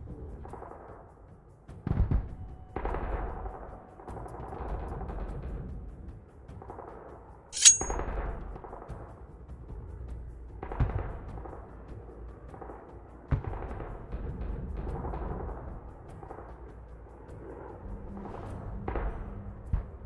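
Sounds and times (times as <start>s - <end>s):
metallic clang ringing: 7.6s - 8.0s.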